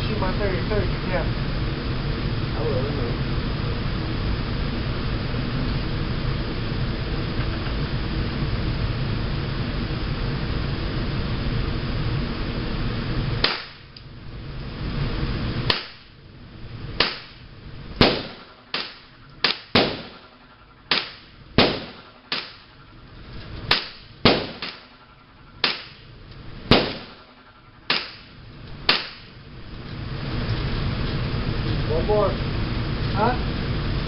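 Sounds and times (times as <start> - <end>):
gunshots echoing: 17.0 - 17.4, 18.0 - 22.7, 23.7 - 25.0, 25.6 - 26.1, 26.7 - 27.2, 27.9 - 29.3.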